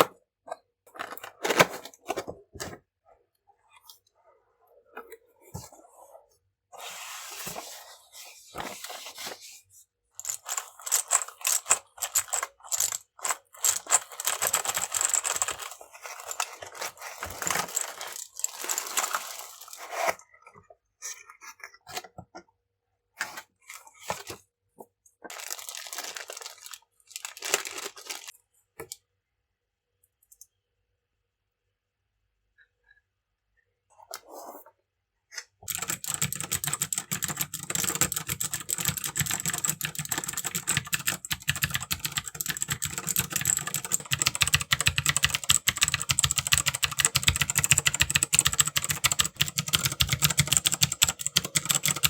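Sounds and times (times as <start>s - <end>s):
packaging tearing and crinkling: 25.3s - 28.3s.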